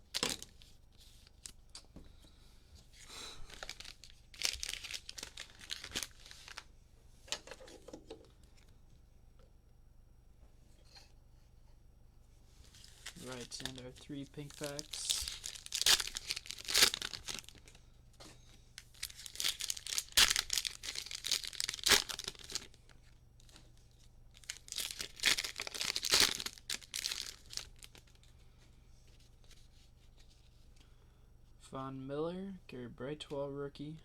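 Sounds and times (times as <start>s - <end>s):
plastic wrapper tearing and crinkling: 0.1s - 1.6s, 3.4s - 6.7s, 12.6s - 17.8s, 18.8s - 23.6s, 24.3s - 28.3s.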